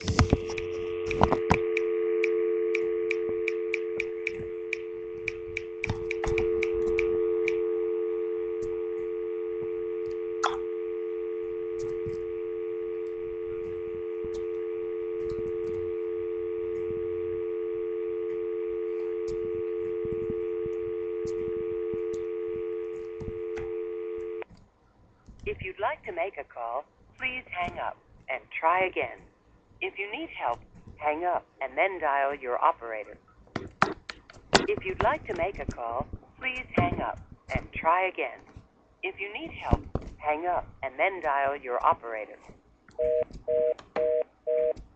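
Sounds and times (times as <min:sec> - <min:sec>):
telephone dial tone: 0:00.0 - 0:24.4, 0:43.0 - 0:44.8.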